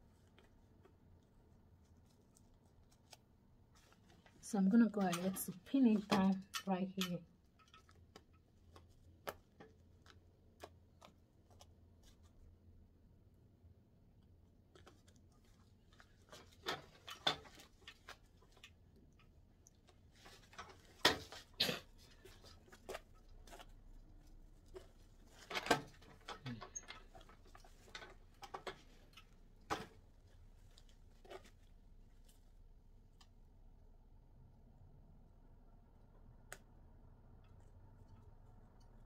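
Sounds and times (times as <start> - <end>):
pins clicking and tapping: 4.9 - 8.3.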